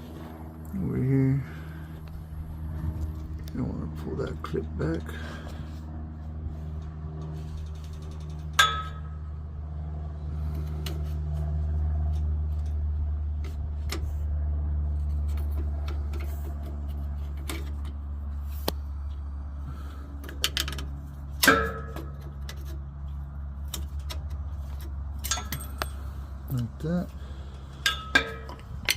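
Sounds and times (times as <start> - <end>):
steady low hum: 0.0 - 28.9
clicks and knocks of tools: 20.2 - 26.6
metal clinks ringing: 25.2 - 26.1.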